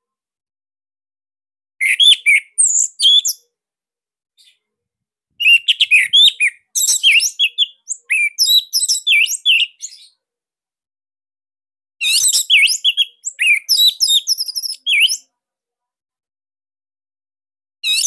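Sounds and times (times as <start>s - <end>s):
thrush singing chirps and whistles: 1.8s - 3.4s, 5.4s - 10.2s, 12.0s - 15.3s.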